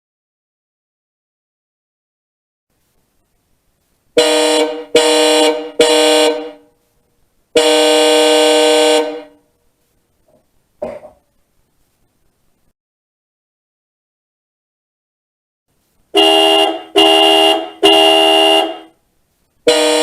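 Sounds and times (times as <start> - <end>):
car horn honking: 4.2 - 6.7, 7.6 - 9.4, 16.1 - 19.0, 19.6 - 20.0.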